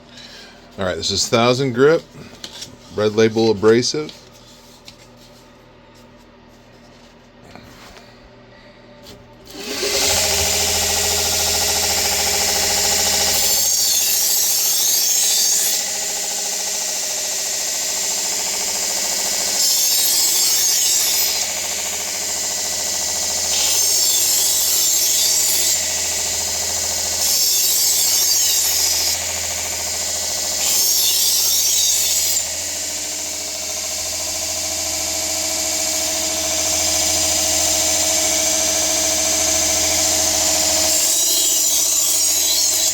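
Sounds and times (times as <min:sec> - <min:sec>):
belt grinder running: 0:09.5 - 0:42.9.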